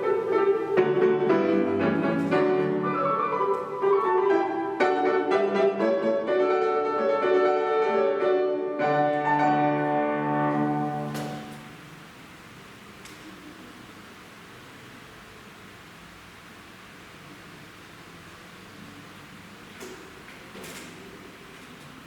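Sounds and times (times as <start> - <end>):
solo piano: 0.0 - 11.8
faint room hiss: 0.0 - 22.0.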